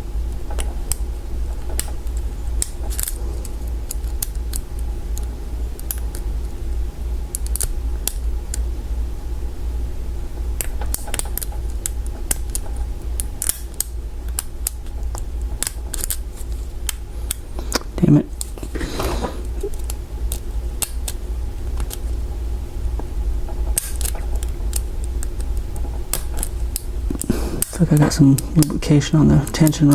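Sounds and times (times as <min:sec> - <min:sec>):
steady low hum: 0:00.0 - 0:29.9.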